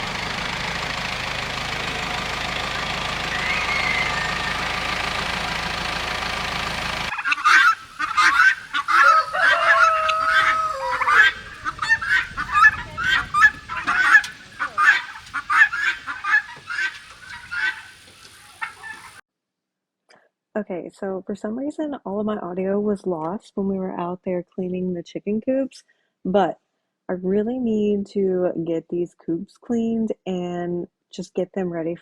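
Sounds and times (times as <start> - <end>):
engine drone: 0.0 - 19.2
poultry honking calls: 0.0 - 19.2.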